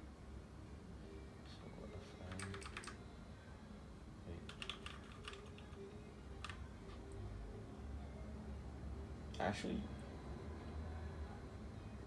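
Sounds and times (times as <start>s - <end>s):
mechanical keyboard keys clacking: 2.3s - 3.0s, 4.5s - 5.7s.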